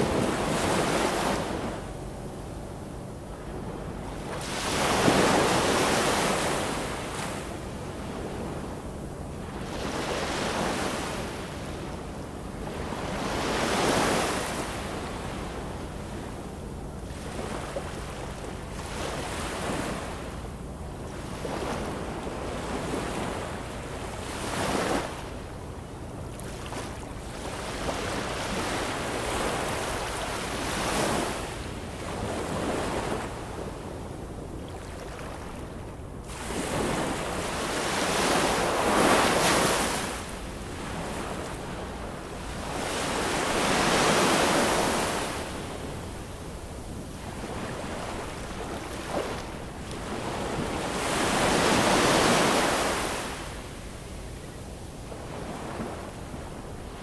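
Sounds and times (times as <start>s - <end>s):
ocean waves breaking: 3.4s - 8.7s, 17.1s - 20.4s, 21.1s - 25.5s, 26.3s - 33.9s, 34.7s - 53.8s.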